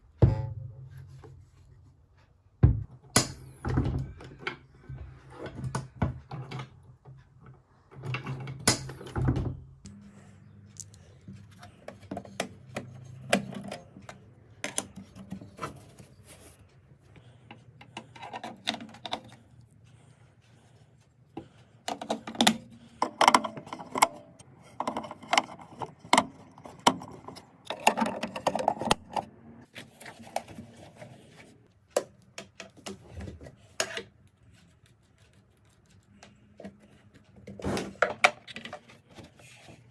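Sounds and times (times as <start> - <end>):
clicks and rattles of handling: 21.5 - 31.1, 35.8 - 39.9.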